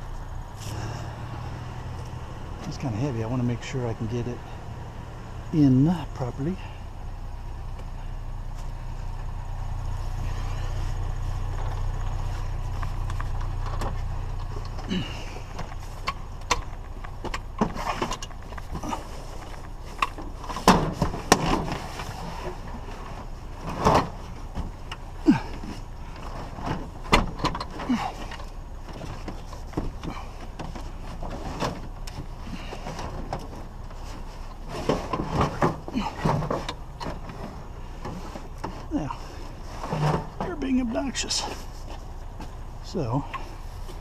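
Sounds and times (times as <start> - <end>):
scrap items knocking and clunking: 14.6 - 40.6.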